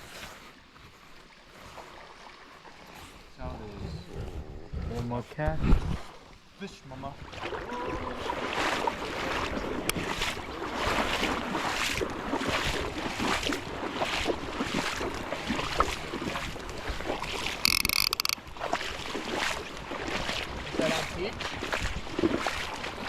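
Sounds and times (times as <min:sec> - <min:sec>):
wind noise on microphone: 0:03.6 - 0:06.1.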